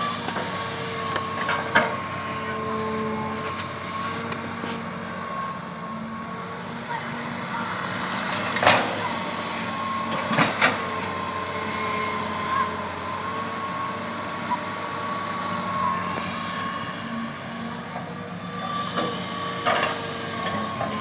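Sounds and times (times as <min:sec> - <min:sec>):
excavator engine with high whine: 0:00.0 - 0:21.0.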